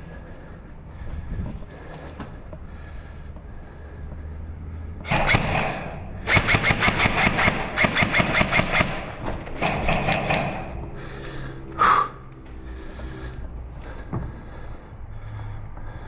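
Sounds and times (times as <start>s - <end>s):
airsoft gun firing bursts: 5.0s - 10.9s.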